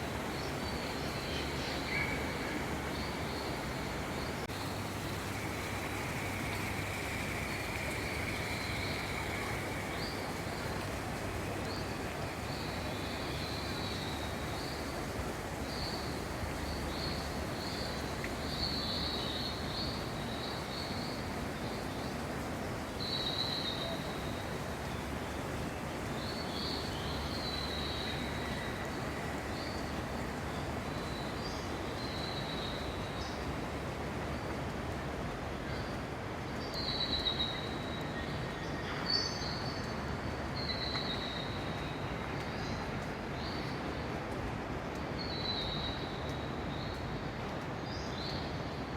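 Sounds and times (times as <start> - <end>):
hall rumble and hiss: 0.0 - 36.4
steady low background noise: 0.0 - 48.9.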